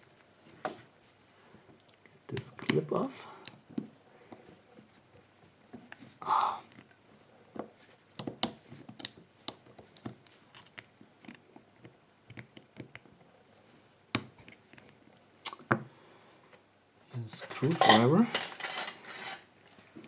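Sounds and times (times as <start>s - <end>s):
small metal tools clinking: 17.4s - 19.4s.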